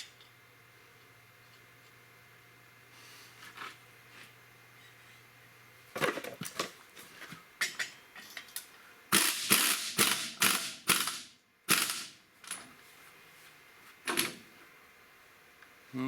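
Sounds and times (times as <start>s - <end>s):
hand tool ratcheting on metal: 9.2s - 12.1s.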